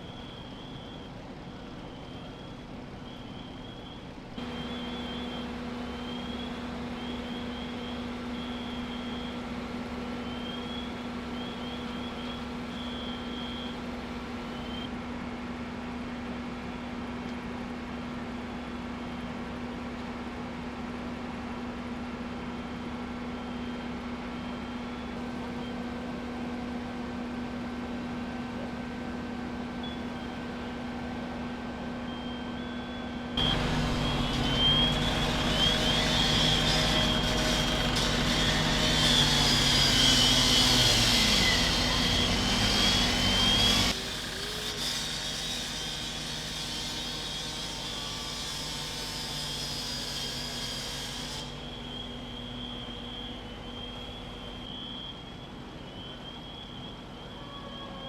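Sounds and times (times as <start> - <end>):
engine noise with wavering tones: 0.0 - 14.9, 22.5 - 44.1, 51.4 - 57.4
fire engine running: 0.0 - 14.9, 21.1 - 44.6.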